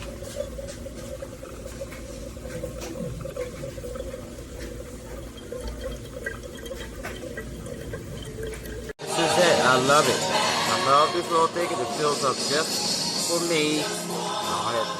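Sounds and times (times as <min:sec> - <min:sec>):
coffee maker low hum: 0:00.0 - 0:09.0
water gurgling and dripping: 0:00.0 - 0:09.0.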